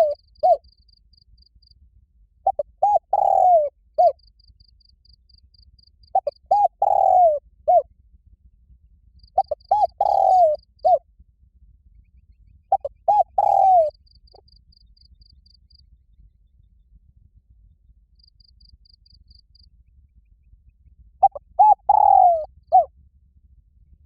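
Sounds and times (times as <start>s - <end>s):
dove cooing: 0.0s - 0.6s, 2.5s - 4.2s, 6.2s - 7.8s, 9.4s - 11.0s, 12.7s - 14.0s, 21.2s - 22.9s.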